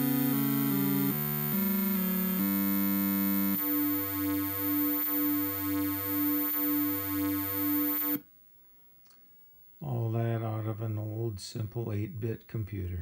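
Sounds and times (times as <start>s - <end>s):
two-voice chiptune music: 0.0s - 8.2s.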